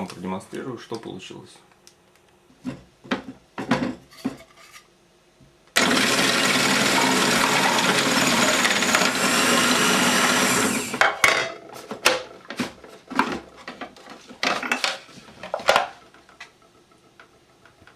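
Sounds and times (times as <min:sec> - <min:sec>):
food processor motor running: 0:05.8 - 0:11.0.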